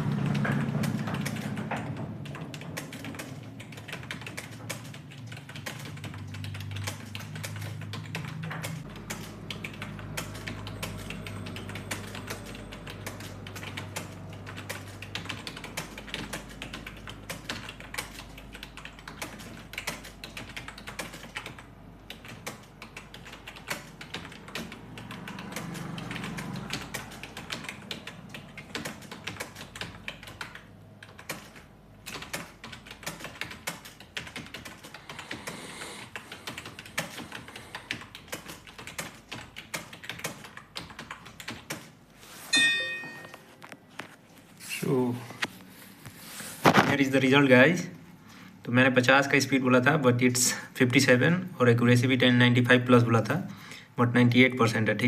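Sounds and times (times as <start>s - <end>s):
fast typing on keyboard: 0.0s - 42.0s.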